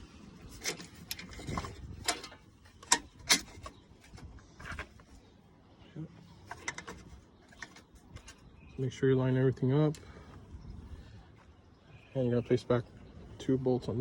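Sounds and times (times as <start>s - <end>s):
metal part clicks and knocks: 0.6s - 4.9s, 6.5s - 8.4s.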